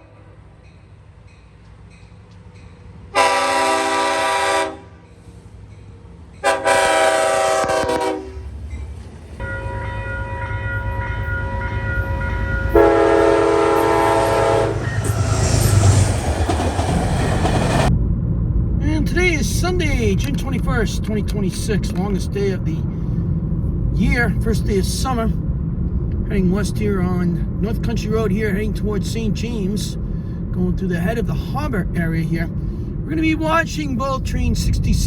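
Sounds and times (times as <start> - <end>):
train engine and wheels rumbling: 0.0 - 35.0
diesel locomotive horn blasts: 3.1 - 5.1, 6.4 - 8.6, 9.4 - 16.1.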